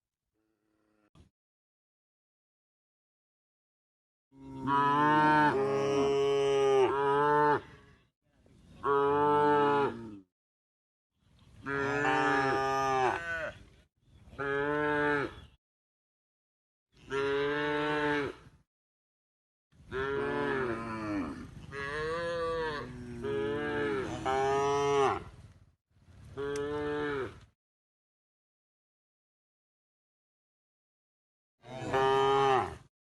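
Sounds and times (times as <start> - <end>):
cow mooing: 4.4 - 7.7, 11.6 - 13.6, 14.4 - 15.4, 17.0 - 18.5, 19.9 - 25.3, 26.4 - 27.4, 31.6 - 32.9.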